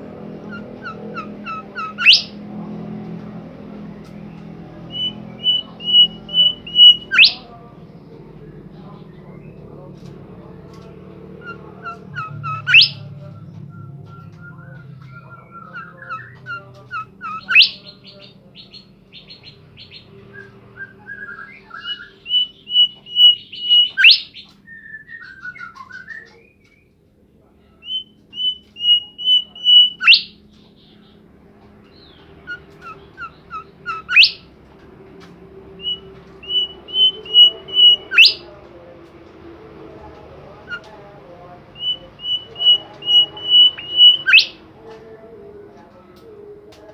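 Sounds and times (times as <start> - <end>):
songbird singing: 0.0 - 46.9
bird chattering notes: 0.1 - 3.0, 4.0 - 7.5, 11.4 - 20.1, 21.4 - 24.6, 27.8 - 31.0, 32.0 - 34.5, 35.8 - 38.5, 41.7 - 44.6.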